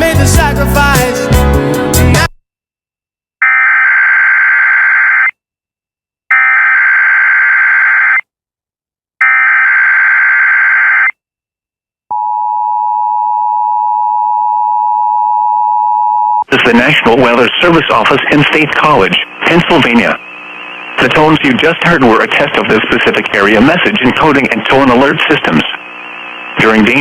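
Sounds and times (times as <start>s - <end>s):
digital data tone bursts: 16.6s - 27.0s.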